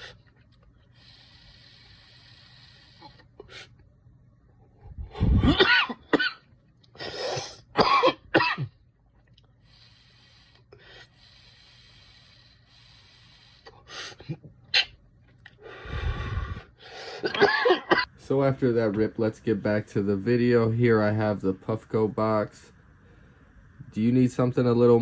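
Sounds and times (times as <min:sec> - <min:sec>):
man coughing: 0:05.3 - 0:06.4, 0:07.4 - 0:08.8, 0:17.2 - 0:18.1
faint steady hiss: 0:15.2 - 0:25.0.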